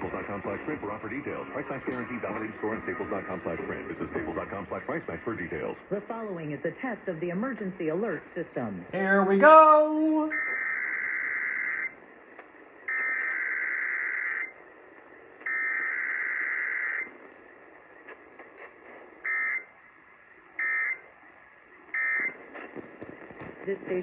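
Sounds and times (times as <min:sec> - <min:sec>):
emergency alert data bursts: 0:09.0 - 0:12.0, 0:12.8 - 0:18.0, 0:19.2 - 0:24.0.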